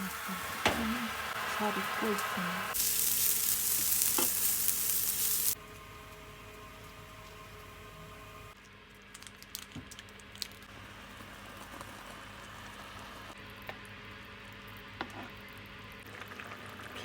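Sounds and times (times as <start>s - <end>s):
food sizzling in a pan: 0.0s - 6.2s.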